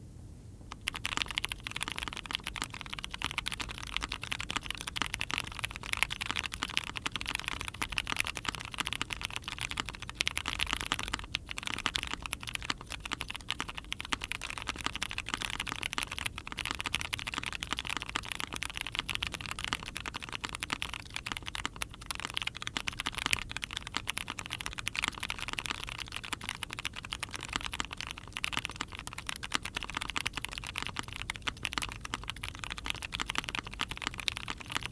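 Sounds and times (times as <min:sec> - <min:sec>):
typing on mechanical keyboard: 0:00.7 - 0:34.9.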